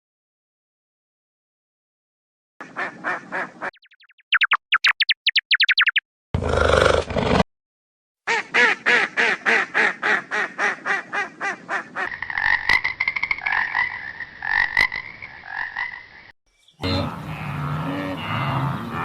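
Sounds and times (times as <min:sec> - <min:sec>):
low steady animal sound: 0:16.8 - 0:19.0.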